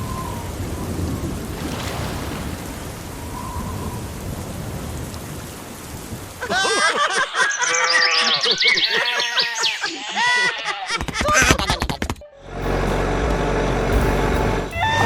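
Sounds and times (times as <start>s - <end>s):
low rumbling thunder: 0.0s - 6.5s
steady rain: 0.0s - 7.4s.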